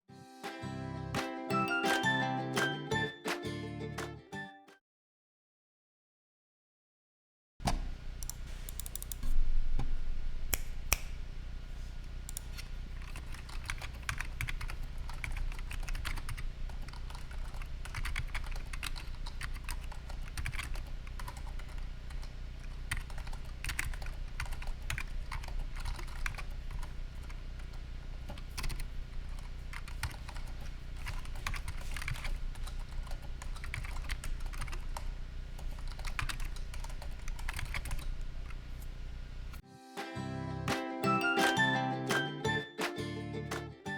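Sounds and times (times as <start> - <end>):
steady low hum: 7.7 - 39.6
mechanical keyboard typing: 8.7 - 9.3, 12.3 - 38.6.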